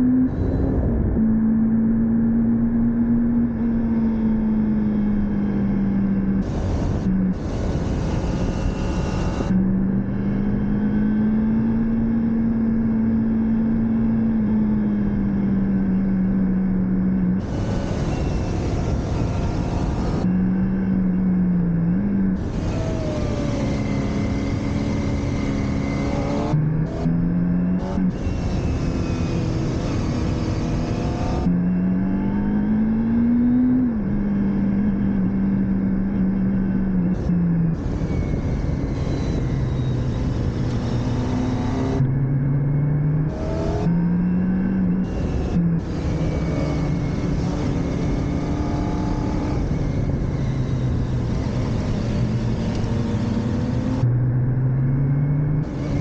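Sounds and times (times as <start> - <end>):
motorcycle engine accelerating: 0.0 - 56.0
wind rush: 0.3 - 1.4.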